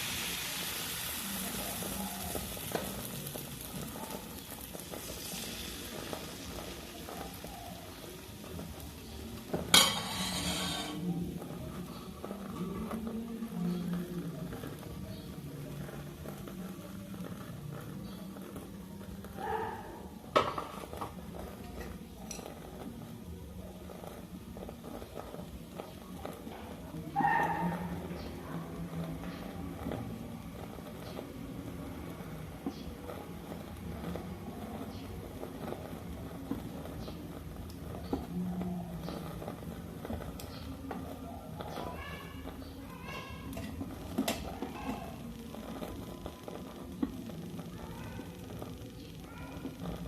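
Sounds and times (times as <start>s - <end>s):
food sizzling in a pan: 0.0s - 50.0s
clicks and scrapes in a pan: 9.4s - 19.4s, 32.6s - 47.2s
metal utensils clinking on pan: 9.6s - 11.0s, 21.6s - 22.7s, 43.5s - 45.0s.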